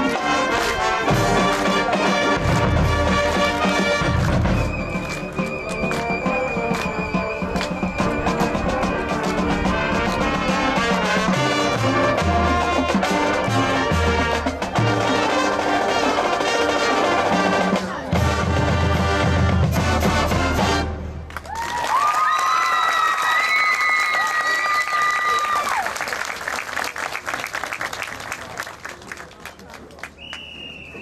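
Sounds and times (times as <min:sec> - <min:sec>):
brass over low bass notes: 0:00.0 - 0:04.6, 0:08.7 - 0:21.2
marching band playing: 0:00.0 - 0:21.4
drumline percussion: 0:00.0 - 0:22.4.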